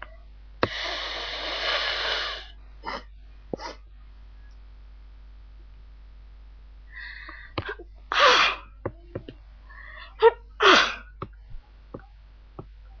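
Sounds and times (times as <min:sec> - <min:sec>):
person sneezing: 0:00.6 - 0:03.8, 0:07.6 - 0:08.7, 0:10.0 - 0:11.1
gasping breath: 0:07.0 - 0:07.6.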